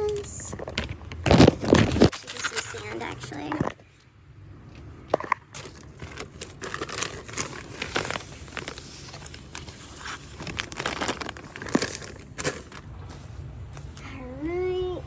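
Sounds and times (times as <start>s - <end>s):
plastic bag crinkling: 0.0s - 3.8s, 5.5s - 12.9s
potting soil scraping: 0.0s - 3.8s, 5.5s - 15.0s.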